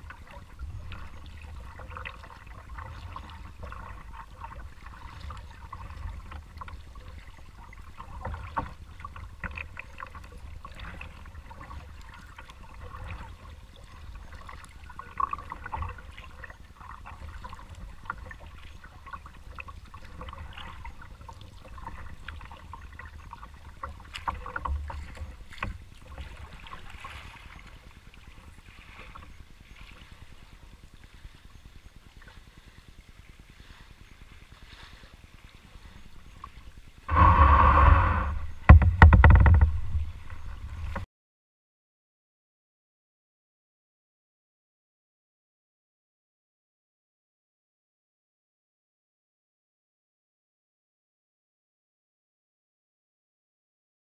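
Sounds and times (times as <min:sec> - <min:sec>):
paddle splashing water: 0:00.0 - 0:41.0
low rumble: 0:37.0 - 0:41.0.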